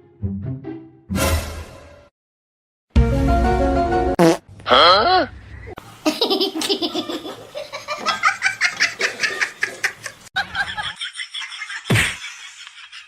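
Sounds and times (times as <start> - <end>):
person laughing: 6.0 - 13.0.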